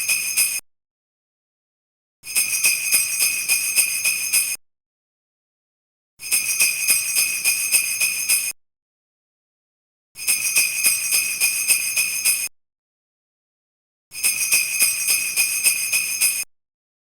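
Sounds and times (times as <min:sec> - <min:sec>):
sleigh bells shaken: 0:14.2 - 0:16.4.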